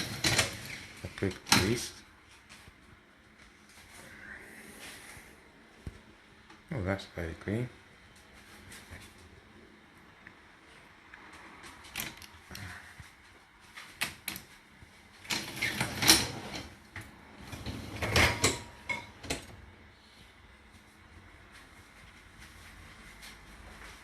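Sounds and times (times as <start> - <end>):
dish racks rattling and scraping: 0.0 - 1.9, 15.3 - 16.8, 17.4 - 19.5.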